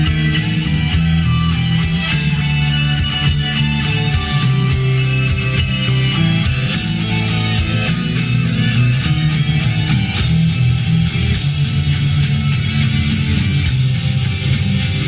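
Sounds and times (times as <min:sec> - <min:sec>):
rock music with electric guitar: 0:00.0 - 0:15.0.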